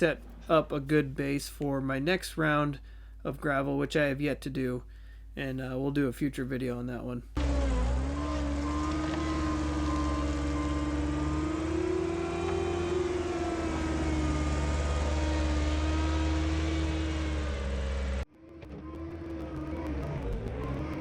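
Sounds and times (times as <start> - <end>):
machine engine running under load: 7.4 - 18.2.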